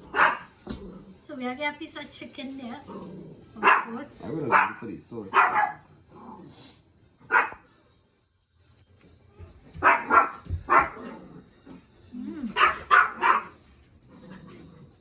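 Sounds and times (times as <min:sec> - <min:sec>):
dogs barking: 0:00.0 - 0:00.8, 0:03.5 - 0:06.0, 0:07.2 - 0:07.7, 0:09.7 - 0:11.3, 0:12.5 - 0:13.7.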